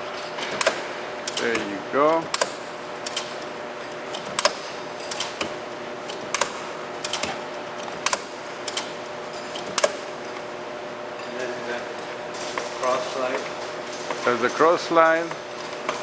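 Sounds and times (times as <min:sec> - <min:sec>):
steady machine hum: 0:00.0 - 0:16.0
metallic clicks of lathe turret: 0:00.5 - 0:03.4, 0:04.1 - 0:09.0.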